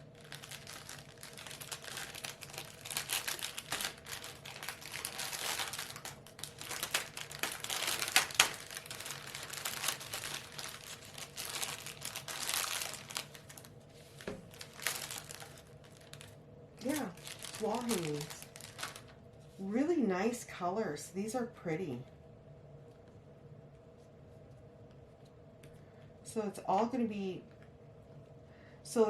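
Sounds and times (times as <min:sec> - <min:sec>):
packaging crinkling and rustling: 0:00.0 - 0:19.6
sharp crackles and snap: 0:00.2 - 0:19.1.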